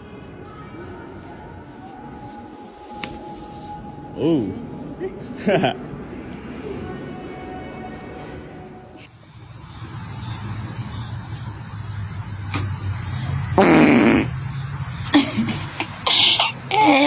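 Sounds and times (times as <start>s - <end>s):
steady high-pitched tone: 8.7s - 17.0s
person farting: 13.6s - 14.3s.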